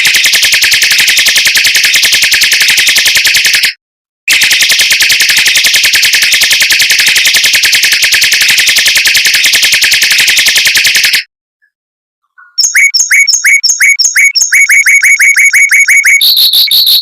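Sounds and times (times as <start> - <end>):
mockingbird trilling: 12.3 - 17.0.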